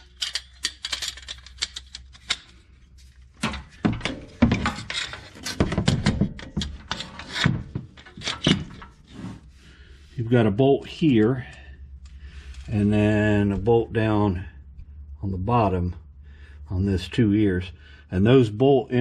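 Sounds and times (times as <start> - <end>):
sharp clicks and knocks: 3.4 - 9.0.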